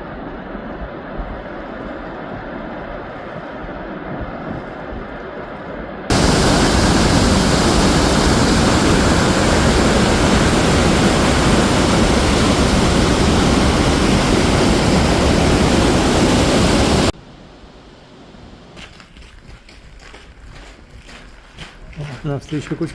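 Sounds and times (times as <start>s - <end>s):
waterfall rushing: 6.1s - 17.2s.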